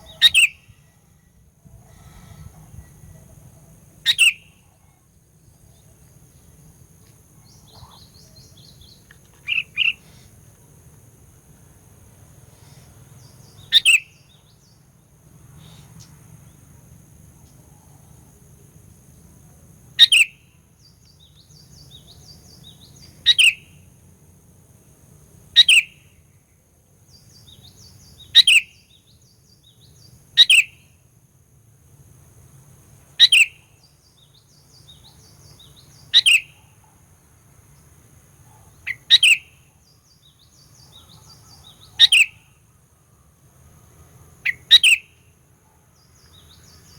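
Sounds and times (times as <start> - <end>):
bulbul downward-sweeping calls: 0.0 - 1.2, 1.8 - 4.7, 7.4 - 10.3, 12.6 - 14.8, 20.0 - 23.8, 25.6 - 26.0, 27.1 - 30.8, 33.2 - 37.0, 38.5 - 42.5, 44.4 - 45.2
faint soft bird chirps: 7.4 - 10.0.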